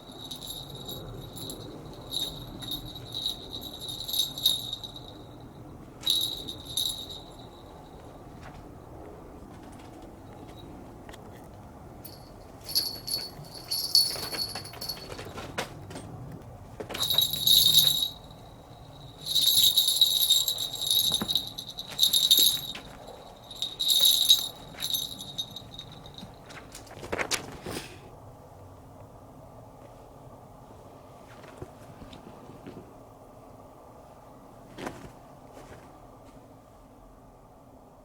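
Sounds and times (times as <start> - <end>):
small bell jingling: 0.0 - 8.3, 12.0 - 15.5, 17.0 - 26.5.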